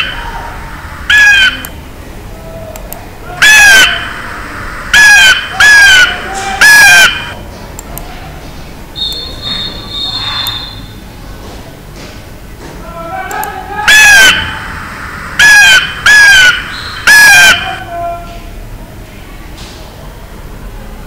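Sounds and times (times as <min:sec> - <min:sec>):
harsh bird calls: 0:00.0 - 0:01.8, 0:03.3 - 0:07.4, 0:13.8 - 0:17.8.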